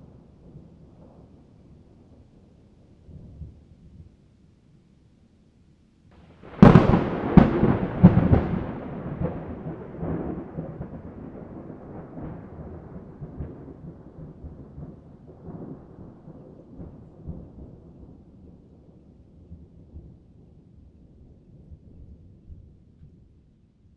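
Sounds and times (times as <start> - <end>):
thunder cracking and rumbling: 6.3 - 20.6.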